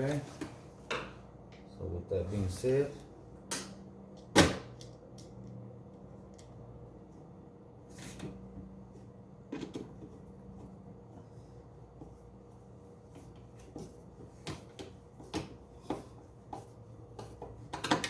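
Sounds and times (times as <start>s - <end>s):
knocks on air conditioner housing: 4.3s - 4.7s.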